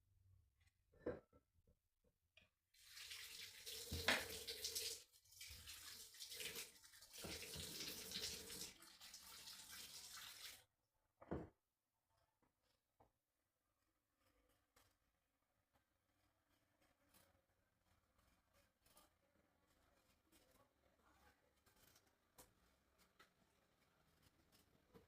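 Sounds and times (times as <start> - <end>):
tap water running into sink: 2.8 - 10.6.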